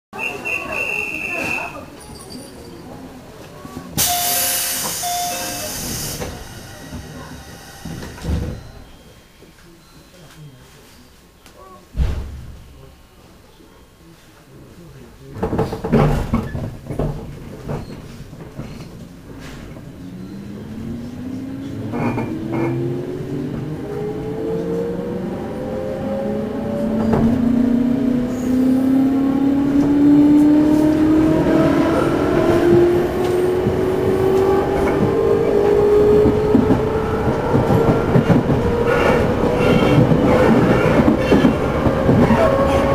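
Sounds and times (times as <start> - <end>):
low thump: 12.0 - 12.6.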